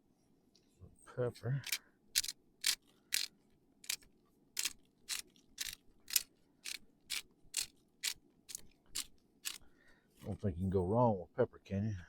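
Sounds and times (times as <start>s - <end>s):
pepper grinder grinding: 1.6s - 4.0s, 4.6s - 9.6s.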